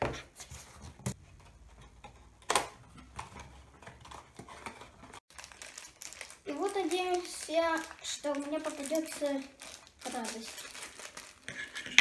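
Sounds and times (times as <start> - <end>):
packaging rustling: 3.8 - 12.0.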